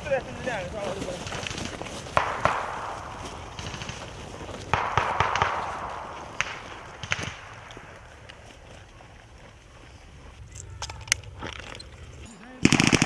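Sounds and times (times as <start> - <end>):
rifle shots with echo: 1.3 - 8.5, 12.6 - 13.0.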